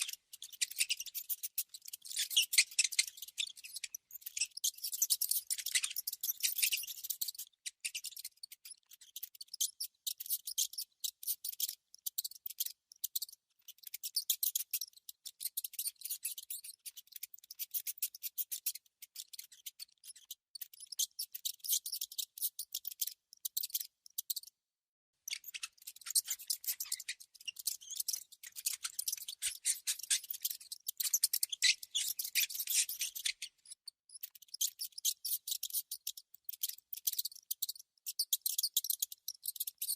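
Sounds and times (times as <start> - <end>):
mouse scratching and nibbling: 0.0 - 11.8, 25.3 - 39.8.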